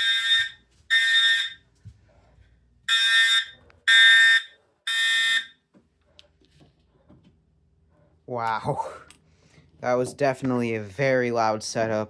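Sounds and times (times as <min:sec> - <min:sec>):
fire alarm horn blasts: 0:00.0 - 0:01.7, 0:02.9 - 0:05.6.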